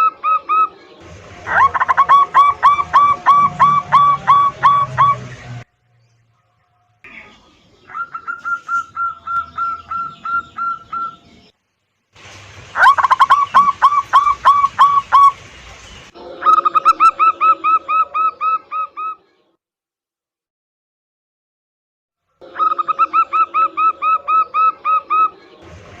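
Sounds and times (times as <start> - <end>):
doves cooing: 0.0 - 5.6, 7.1 - 11.4, 12.7 - 19.2, 22.4 - 26.0.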